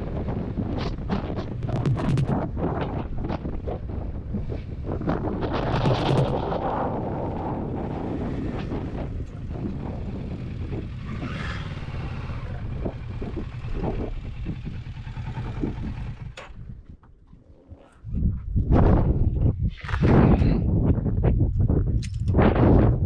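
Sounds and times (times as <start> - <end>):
motorcycle engine rumble: 0.0 - 17.3
wind noise: 0.0 - 23.0.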